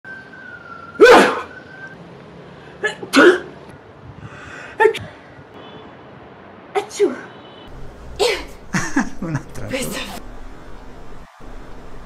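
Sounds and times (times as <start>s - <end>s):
person sneezing: 1.0s - 1.5s, 2.8s - 3.6s, 8.2s - 8.6s.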